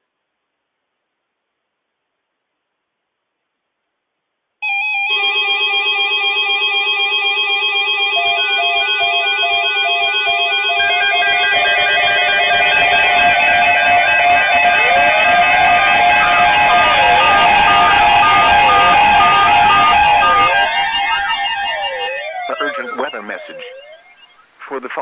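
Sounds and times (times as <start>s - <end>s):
alternating electronic tones: 4.7s - 24.6s
weather alert radio alarms: 4.7s - 25.0s.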